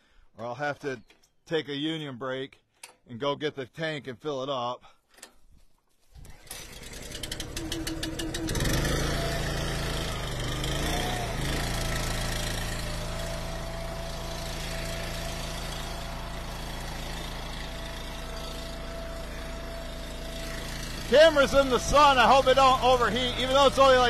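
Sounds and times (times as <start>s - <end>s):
small gas engine starting: 6.1s - 24.0s.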